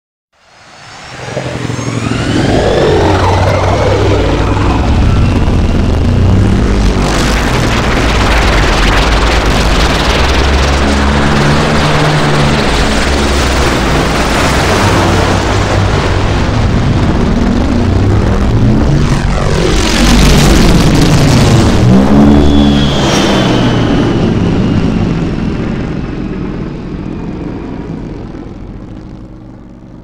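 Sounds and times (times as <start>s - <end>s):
aircraft engine rumble with whines: 0.4s - 30.0s.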